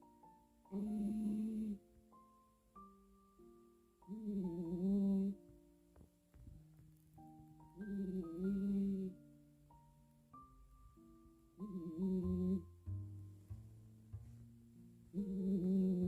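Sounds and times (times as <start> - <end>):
gentle background music: 0.0 - 16.0
pet snoring: 4.1 - 5.4, 15.2 - 16.0.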